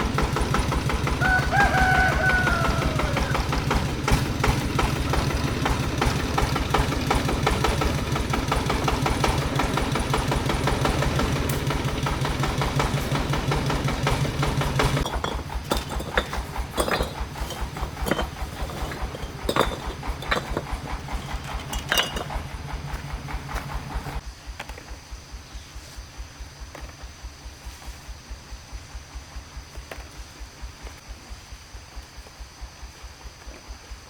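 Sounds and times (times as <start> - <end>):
small engine running: 0.0 - 24.2
sharp clinks and knocks: 14.9 - 22.7.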